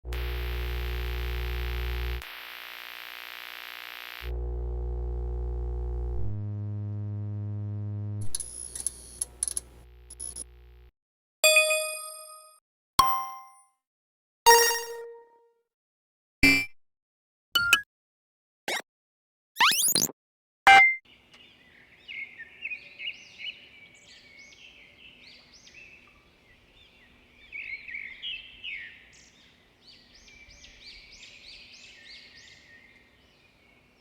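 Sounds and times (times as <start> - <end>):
buzzy electronic tones: 0.0 - 10.9
glitchy clicks: 0.1 - 7.3, 8.0 - 10.9.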